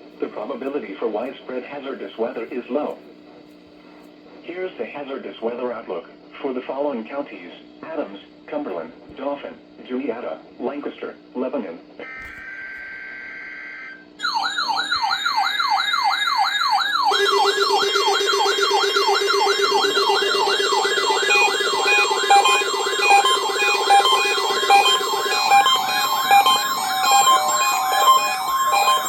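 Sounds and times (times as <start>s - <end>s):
low buzzing alarm: 12.1s - 29.0s
warbling alarm: 12.1s - 29.0s
steady tone: 14.2s - 29.0s
radio data burst: 16.8s - 29.0s.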